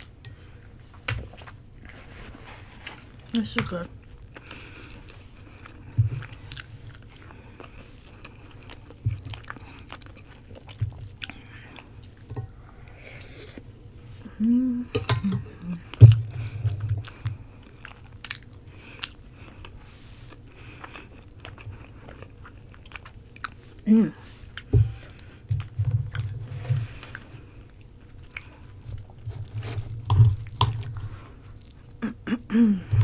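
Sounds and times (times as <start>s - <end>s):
chewing and mouth sounds: 3.7s - 14.4s, 15.0s - 26.4s, 27.0s - 33.0s
person humming: 14.2s - 16.1s, 32.0s - 33.0s.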